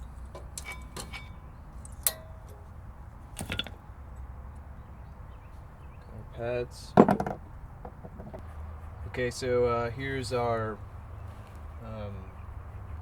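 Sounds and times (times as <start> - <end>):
brake pads clinking: 0.0 - 2.7, 3.3 - 4.3, 7.0 - 8.5.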